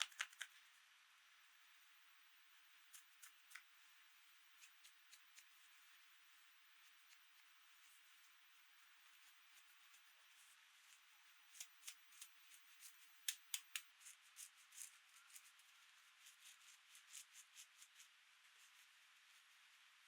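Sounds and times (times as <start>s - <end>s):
small hard objects clicking: 0.0s - 0.5s, 13.3s - 13.9s.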